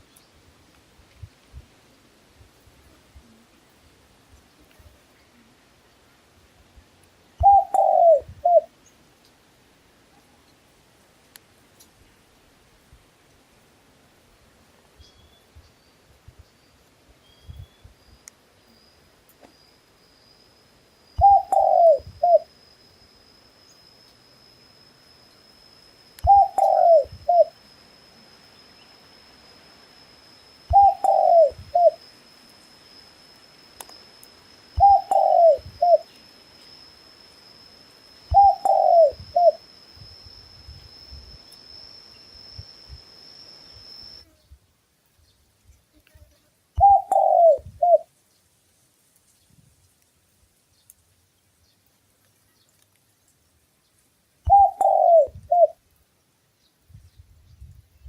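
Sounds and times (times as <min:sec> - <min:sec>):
faint high-pitched whine: 0:00.0 - 0:58.0
dove cooing: 0:07.4 - 0:08.7, 0:21.2 - 0:22.5, 0:26.2 - 0:27.5, 0:30.7 - 0:32.0, 0:34.8 - 0:36.1, 0:38.3 - 0:39.6, 0:46.8 - 0:48.1, 0:54.5 - 0:55.8.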